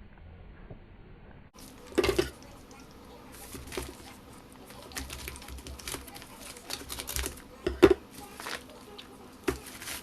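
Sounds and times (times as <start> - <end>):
package clicks and rustles: 4.8 - 7.4.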